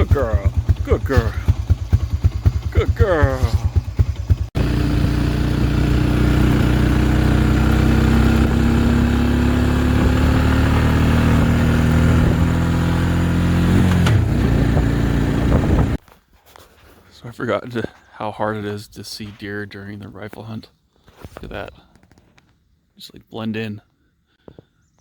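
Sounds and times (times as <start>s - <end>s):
truck engine drone: 0.0s - 16.0s.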